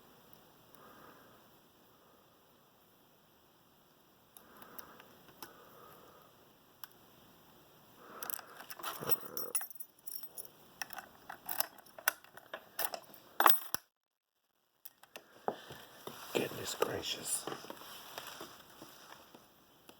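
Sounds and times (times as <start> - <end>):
lock picking clicks and scrapes: 10.8 - 13.8.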